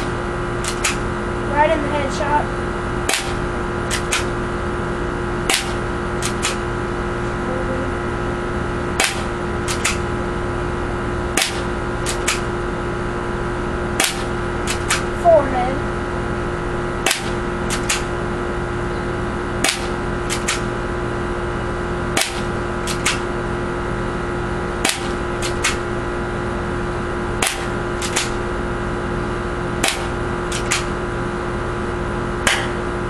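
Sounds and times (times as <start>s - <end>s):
airsoft pistol shots: 0.0s - 1.0s, 3.0s - 4.4s, 5.4s - 6.7s, 9.0s - 10.2s, 11.3s - 12.5s, 14.0s - 15.1s, 17.0s - 18.2s, 19.6s - 20.7s, 22.1s - 23.3s, 24.8s - 25.8s, 27.4s - 28.5s, 29.8s - 31.0s, 32.4s - 32.8s
steady background hum: 0.0s - 33.0s.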